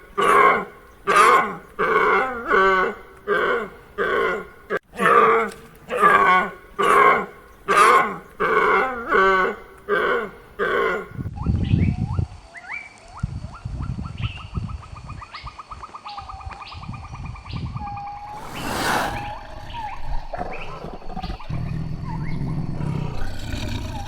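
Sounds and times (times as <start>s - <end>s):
loud pitched animal calls: 18.2s - 22.2s
low animal rumbling: 18.3s - 24.0s.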